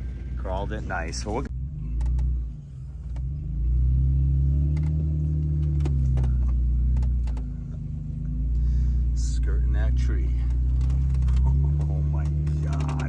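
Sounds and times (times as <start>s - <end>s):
engine running at low speed: 0.0s - 13.0s
sharp clicks and knocks: 4.6s - 8.3s, 10.4s - 13.0s.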